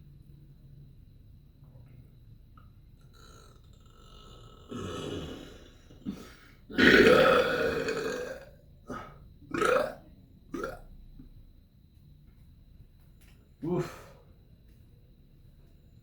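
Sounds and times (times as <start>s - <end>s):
person burping: 3.1s - 10.9s, 13.6s - 14.2s.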